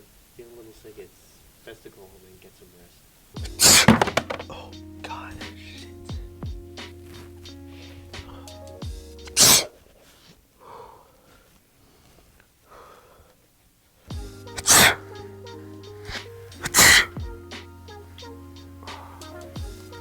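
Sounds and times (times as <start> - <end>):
background music: 3.4 - 9.7, 14.1 - 20.0
man sneezing loudly: 9.4 - 9.7, 16.8 - 17.1.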